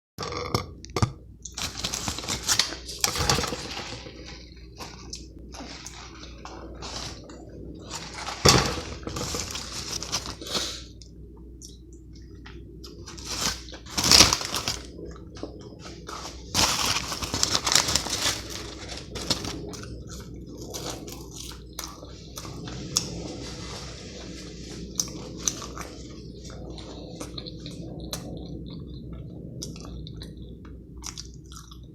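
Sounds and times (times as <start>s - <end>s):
eating crunching: 0.2s - 31.9s
food wrapper crinkling: 1.4s - 11.0s, 12.9s - 27.7s.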